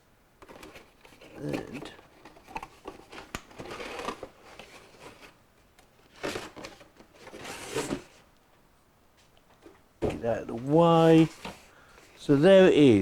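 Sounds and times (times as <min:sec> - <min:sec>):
packaging rustling: 0:00.4 - 0:08.2, 0:10.4 - 0:12.6.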